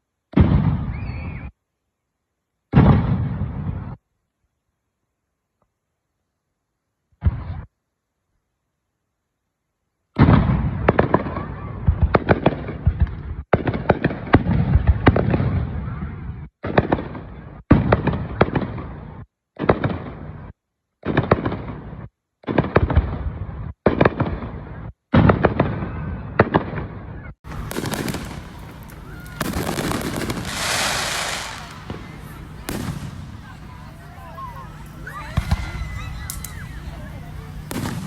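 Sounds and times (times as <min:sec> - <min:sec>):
fireworks bursting with bangs: 0:26.4 - 0:38.0
steady hiss: 0:27.5 - 0:38.0.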